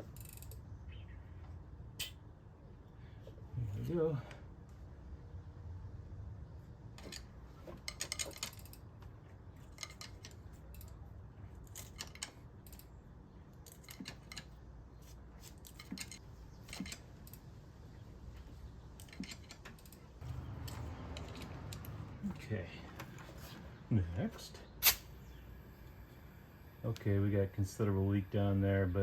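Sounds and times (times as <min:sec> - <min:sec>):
small metal tools clinking: 0:07.0 - 0:08.9, 0:09.6 - 0:11.0, 0:11.6 - 0:12.9, 0:13.6 - 0:14.6, 0:15.4 - 0:17.4, 0:19.0 - 0:22.0.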